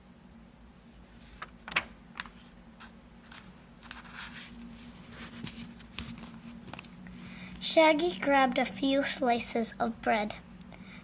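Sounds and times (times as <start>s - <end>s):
faint steady hum: 0.0s - 11.0s
paper page rustling: 1.2s - 7.0s.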